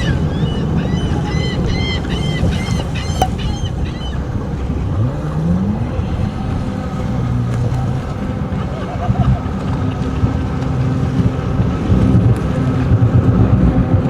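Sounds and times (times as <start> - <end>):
bird calling: 0.0 - 5.5
boat engine revving: 0.0 - 14.0.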